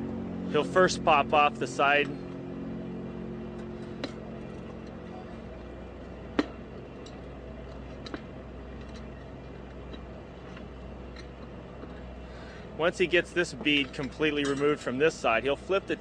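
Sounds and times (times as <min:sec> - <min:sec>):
low hum: 0:00.0 - 0:16.0
tire irons clinking on wheel rim: 0:03.4 - 0:15.3.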